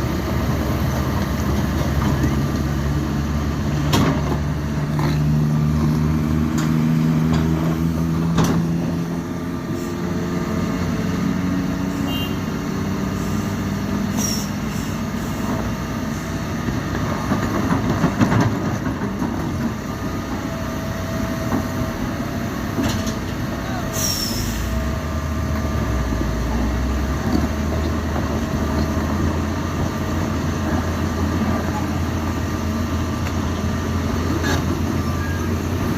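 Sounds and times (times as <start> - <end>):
heavy diesel truck engine straining: 0.0 - 35.9
short high hisses: 23.9 - 24.8.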